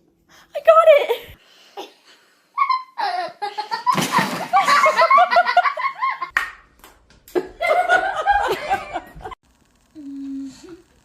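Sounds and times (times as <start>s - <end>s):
person laughing: 7.4s - 9.4s.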